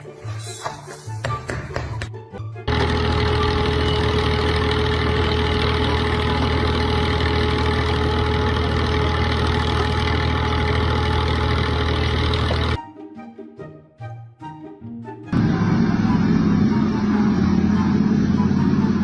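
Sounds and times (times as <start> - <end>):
heavy machine engine humming: 2.7 - 12.8, 15.3 - 19.0.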